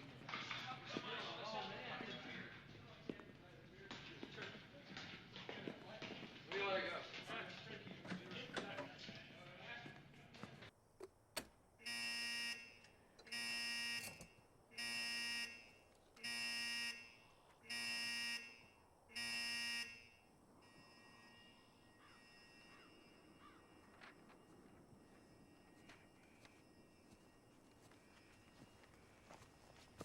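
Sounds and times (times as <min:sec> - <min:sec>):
electric buzzer: 0:11.8 - 0:22.9.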